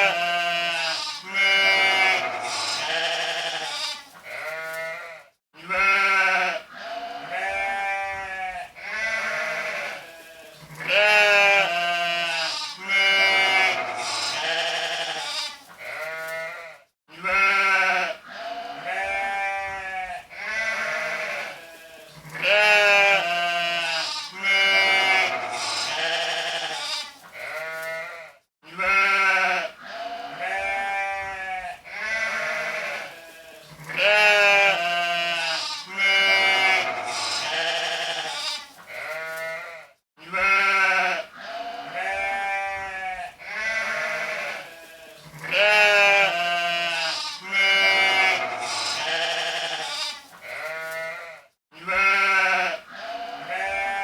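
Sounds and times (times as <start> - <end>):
sheep bleating: 0.0 - 54.0.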